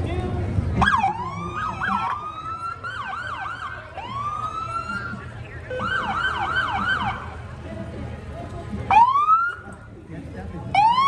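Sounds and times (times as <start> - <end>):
emergency vehicle sirens wailing: 0.4 - 7.6, 8.9 - 9.9, 10.7 - 11.0
siren rapid yelp: 0.8 - 7.3.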